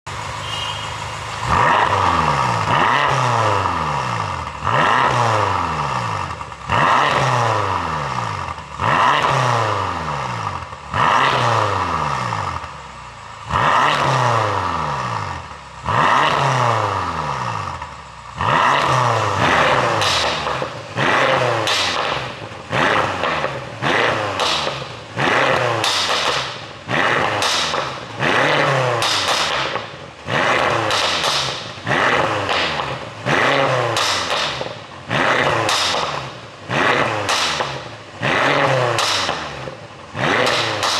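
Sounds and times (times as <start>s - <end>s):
car engine revving: 0.0s - 40.9s
exhaust popping and crackling: 0.1s - 7.7s, 17.8s - 40.9s.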